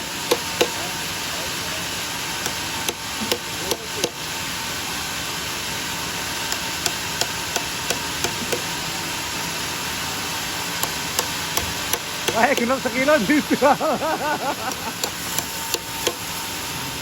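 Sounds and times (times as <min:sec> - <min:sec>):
background hum: 0:00.0 - 0:17.0
hammer knocking nails into log: 0:00.3 - 0:00.8, 0:02.4 - 0:04.2, 0:06.5 - 0:08.7, 0:10.8 - 0:12.8, 0:14.7 - 0:16.3.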